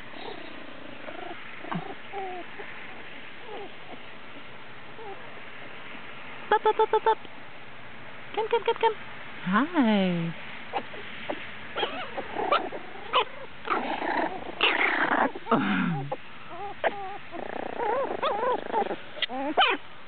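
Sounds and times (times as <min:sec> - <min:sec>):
puppies yipping and whining: 0:00.0 - 0:05.3, 0:10.7 - 0:19.9
puppies play-growling: 0:00.0 - 0:06.0, 0:10.7 - 0:19.9.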